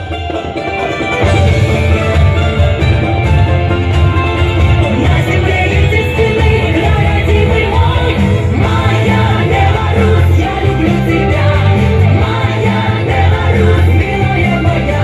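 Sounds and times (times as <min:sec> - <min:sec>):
rock song: 0:00.0 - 0:15.0.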